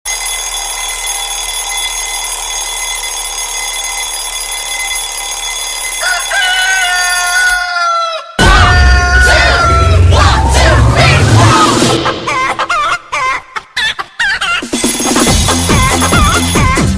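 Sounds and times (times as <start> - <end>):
rooster crow alarm tone: 1.0 - 11.5.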